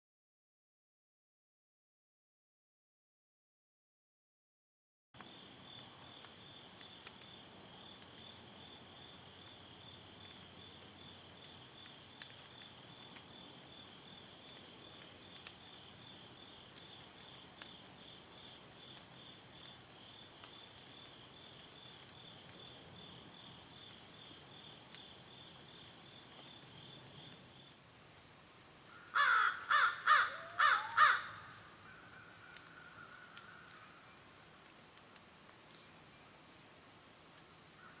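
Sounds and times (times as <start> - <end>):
insects trilling: 28.8 - 35.1
crow cawing: 28.9 - 32.2.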